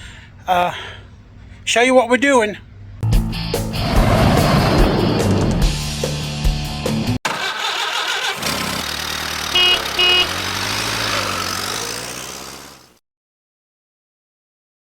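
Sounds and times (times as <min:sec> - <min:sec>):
car engine running: 0:07.3 - 0:13.0
car horn beeps: 0:09.4 - 0:10.6.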